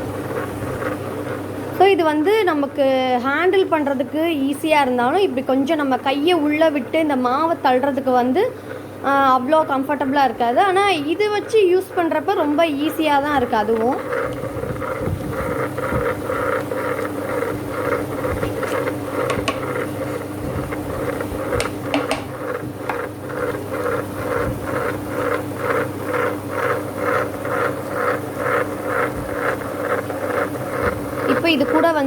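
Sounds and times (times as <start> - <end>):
wet grinder humming and swishing: 0.0 - 32.0.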